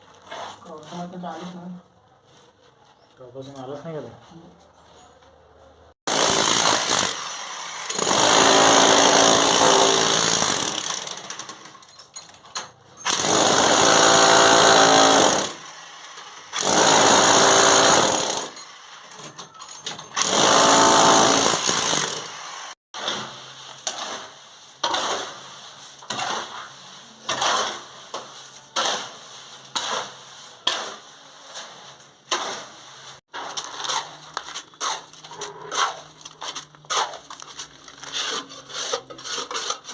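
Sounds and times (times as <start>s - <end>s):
demolition hammer bursts: 13.0s - 15.6s, 20.1s - 22.3s.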